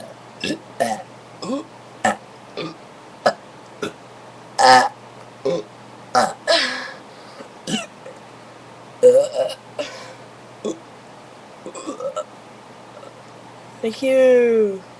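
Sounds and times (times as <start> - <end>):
person burping: 0.0 - 4.0, 4.6 - 6.9, 7.7 - 7.9, 9.0 - 10.8, 11.6 - 12.3.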